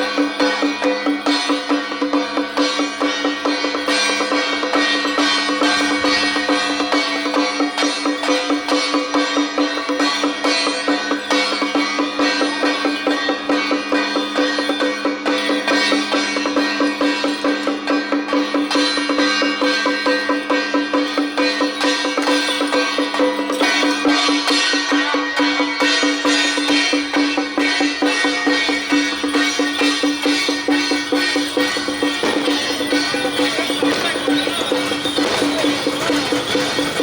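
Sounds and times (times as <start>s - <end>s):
drums and wood block beat: 0.0s - 37.0s.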